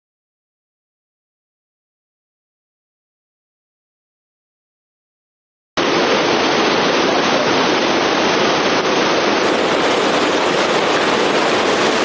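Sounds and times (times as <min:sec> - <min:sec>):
waterfall rushing: 0:05.8 - 0:12.0.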